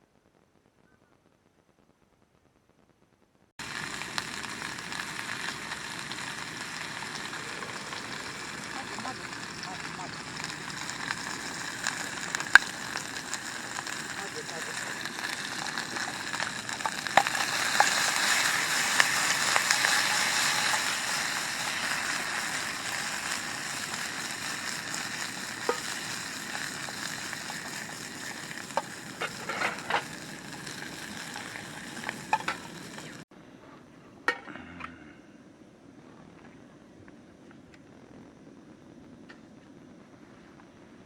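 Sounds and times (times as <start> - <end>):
food sizzling in a pan: 3.6 - 33.3.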